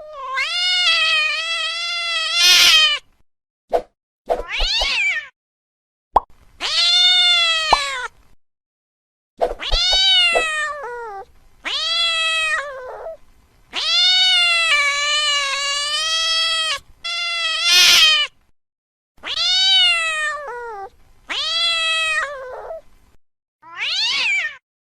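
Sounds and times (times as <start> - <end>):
cat yowling: 0.0 - 3.0, 4.4 - 5.3, 6.6 - 8.1, 9.6 - 13.2, 13.8 - 18.3, 19.2 - 22.8, 23.6 - 24.6.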